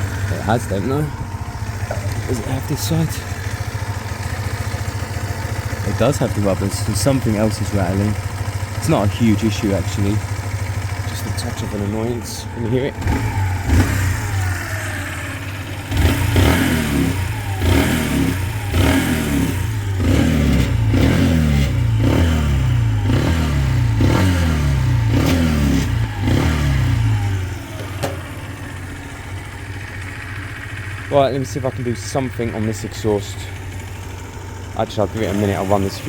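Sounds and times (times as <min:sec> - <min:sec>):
motorcycle engine revving: 0:00.0 - 0:36.0
motorcycle rattle: 0:00.0 - 0:36.0.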